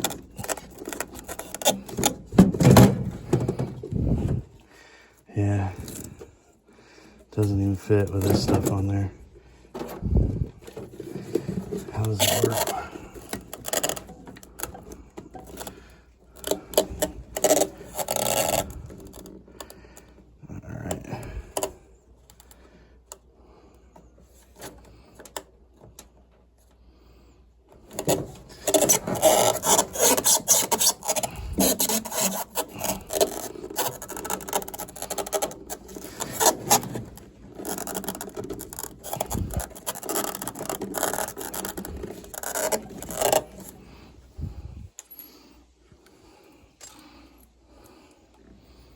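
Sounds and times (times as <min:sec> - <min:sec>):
hand scraping metal parts: 0:00.0 - 0:04.7, 0:07.4 - 0:20.3, 0:27.8 - 0:45.6.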